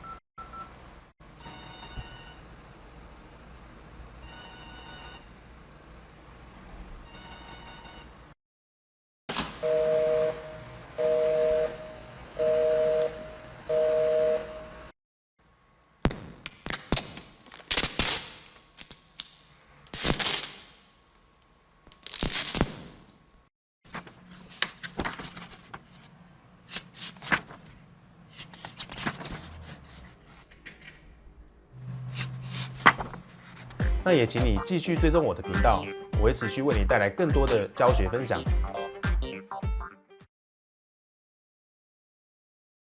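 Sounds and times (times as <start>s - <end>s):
telephone busy signal beeps: 9.6s - 14.8s
paper tearing and crumpling: 21.9s - 23.0s, 23.9s - 26.1s, 26.7s - 30.4s, 32.1s - 33.8s.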